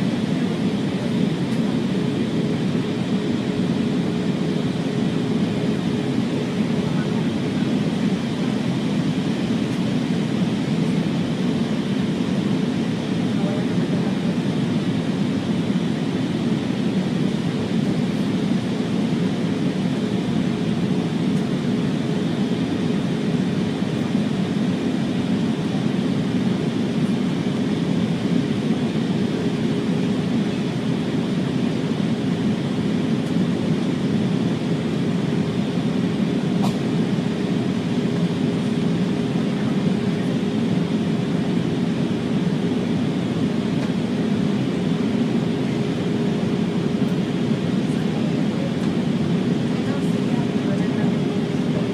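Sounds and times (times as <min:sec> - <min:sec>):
airflow and engine drone: 0:00.0 - 0:51.9
steady hum: 0:00.0 - 0:51.9.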